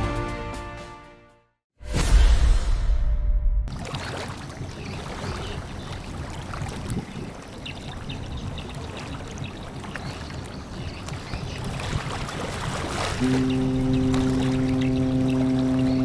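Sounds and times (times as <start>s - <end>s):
wind: 1.8s - 16.0s
rush of sea water: 3.7s - 16.0s.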